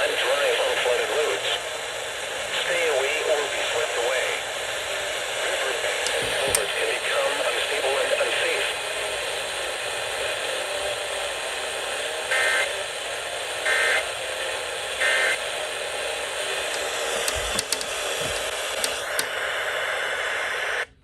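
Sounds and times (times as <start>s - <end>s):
radio hiss: 0.0s - 21.0s
sharp clicks: 16.7s - 19.4s.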